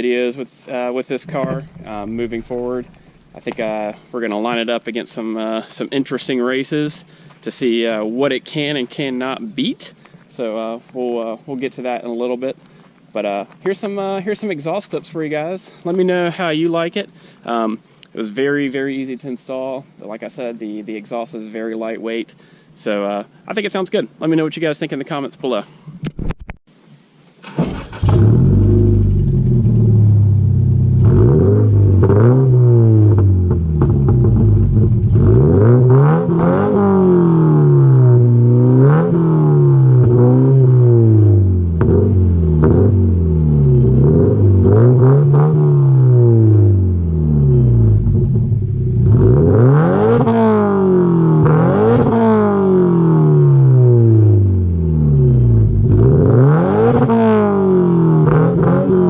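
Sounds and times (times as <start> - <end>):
exhaust pops and crackles: 1.1 - 6.3, 26.0 - 26.6, 30.9 - 32.5, 33.1 - 37.3, 41.7 - 43.0, 47.8 - 50.5, 55.2 - 57.4
car engine revving: 1.2 - 4.6, 27.8 - 59.0.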